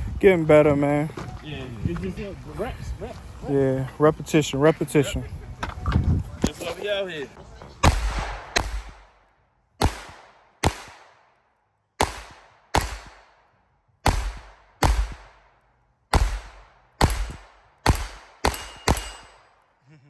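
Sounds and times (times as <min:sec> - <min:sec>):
pistol shots with echo: 0:07.8 - 0:11.4, 0:12.0 - 0:19.6.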